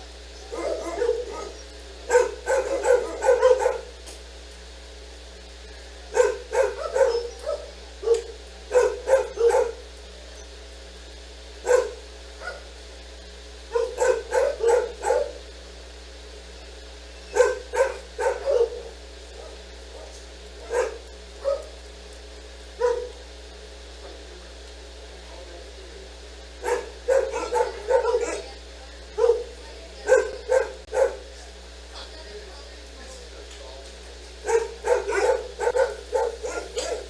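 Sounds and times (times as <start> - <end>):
dog barking: 0.4 - 4.0, 6.1 - 9.9, 11.6 - 12.8, 13.7 - 15.4, 17.3 - 21.8, 22.8 - 23.2, 26.6 - 31.3, 34.4 - 37.0.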